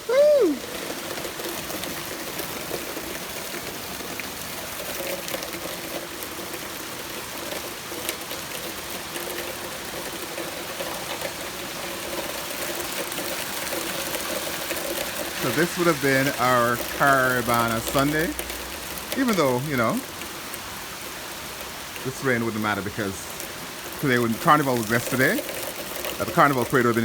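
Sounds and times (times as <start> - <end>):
rain falling: 0.0 - 27.0.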